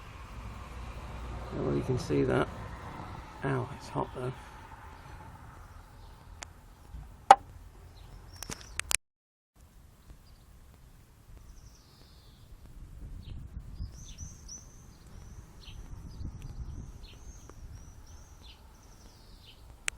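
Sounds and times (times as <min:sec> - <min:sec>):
small bird chirping: 0:11.4 - 0:12.5, 0:13.2 - 0:19.9.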